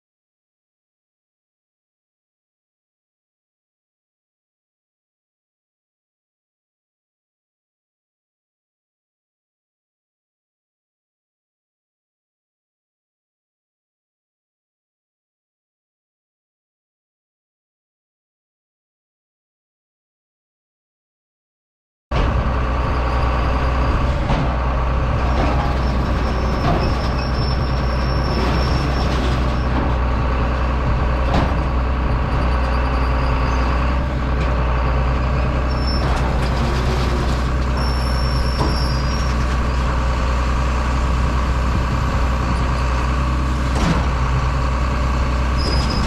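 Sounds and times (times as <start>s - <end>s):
farm machine engine droning: 22.1s - 46.0s.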